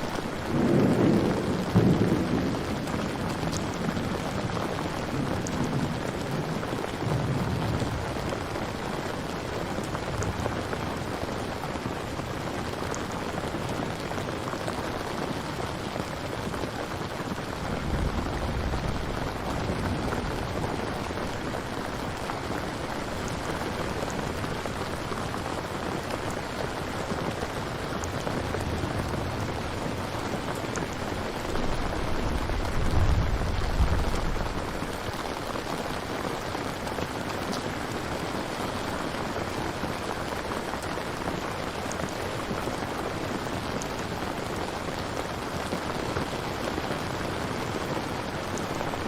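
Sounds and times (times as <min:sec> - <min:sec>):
distant thunder rumbles: 0:00.0 - 0:08.6, 0:17.4 - 0:26.8, 0:27.4 - 0:35.8
steady rainfall: 0:00.0 - 0:49.0.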